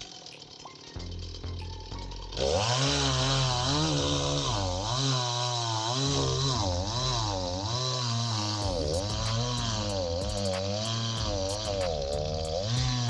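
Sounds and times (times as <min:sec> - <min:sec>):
chainsaw cutting: 0:02.4 - 0:13.0.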